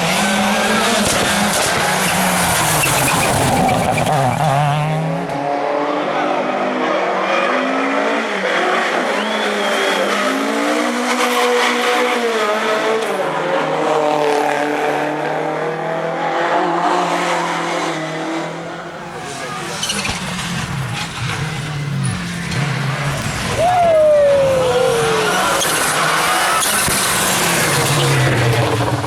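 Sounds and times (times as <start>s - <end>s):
tyre noise: 0.0s - 5.0s, 18.6s - 29.0s
rally car engine revving: 0.0s - 29.0s.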